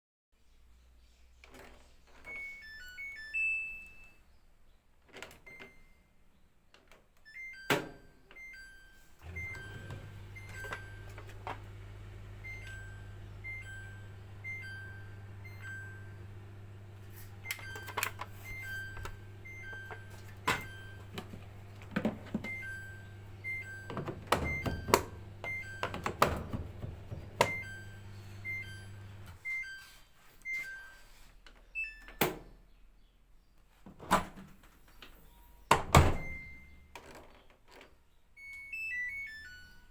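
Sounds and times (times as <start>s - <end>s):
two-tone alarm beeping: 7.2s - 11.2s, 12.4s - 16.2s, 17.4s - 21.2s, 22.4s - 31.0s, 38.4s - 39.9s
low machine hum: 9.2s - 29.4s.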